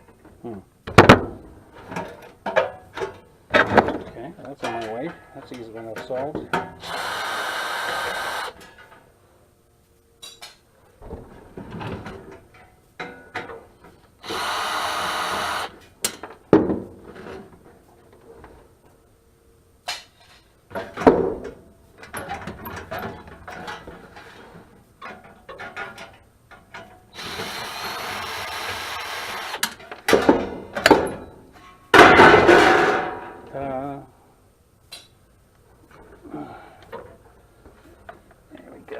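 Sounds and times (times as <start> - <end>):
power drill bursts: 6.8 - 8.6, 14.2 - 15.7, 27.1 - 29.6.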